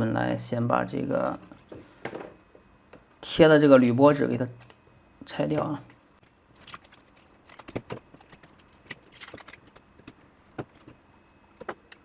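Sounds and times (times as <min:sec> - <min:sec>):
foil peeling and crinkling: 0:06.2 - 0:11.0.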